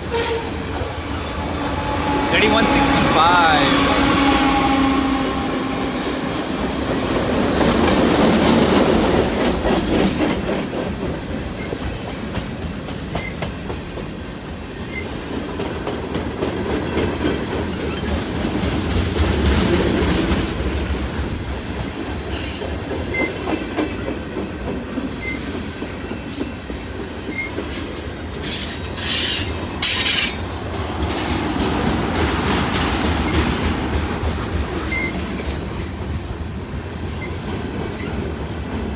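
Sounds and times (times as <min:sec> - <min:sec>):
train rumble: 0:00.0 - 0:38.9
high-pitched wheel screeches: 0:01.0 - 0:07.1.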